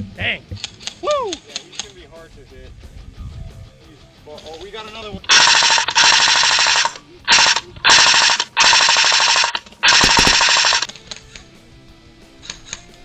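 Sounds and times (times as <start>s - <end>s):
airsoft rifle firing bursts: 5.3s - 11.0s.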